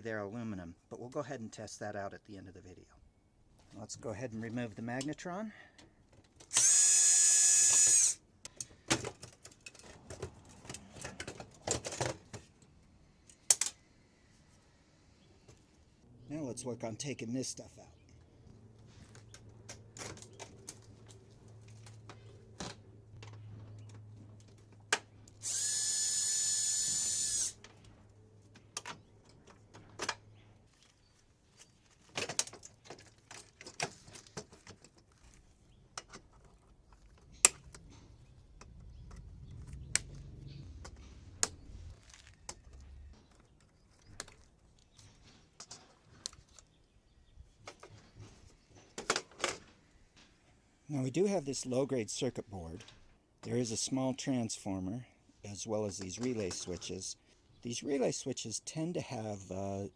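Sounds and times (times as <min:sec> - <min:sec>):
power drill whining: 0:06.5 - 0:08.2, 0:25.4 - 0:27.6.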